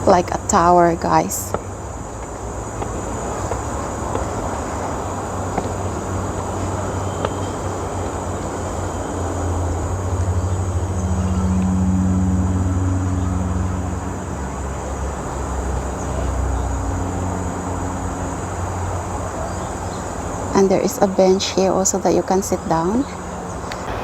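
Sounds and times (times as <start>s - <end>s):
road traffic hum: 0.0s - 24.0s
vehicle engine droning low: 0.0s - 24.0s.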